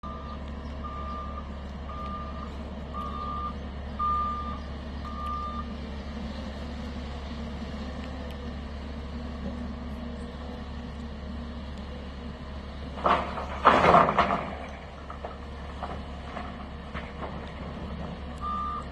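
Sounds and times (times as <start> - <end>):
backup alarm beeping: 0.0 - 5.7, 18.4 - 18.9
diesel engine rumble: 0.0 - 18.9.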